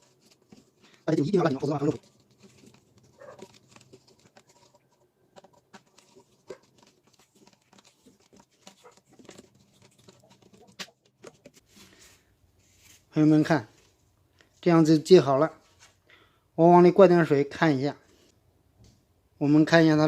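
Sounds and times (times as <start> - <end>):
adhesive tape rustling: 0.0 - 13.1.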